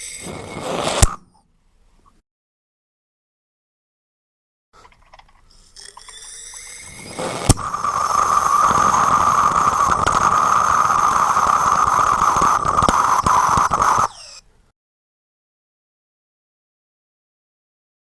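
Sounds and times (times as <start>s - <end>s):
rocket engine burning with squeal: 0.0s - 1.2s, 5.9s - 14.4s
propellant flow hissing: 6.4s - 14.1s.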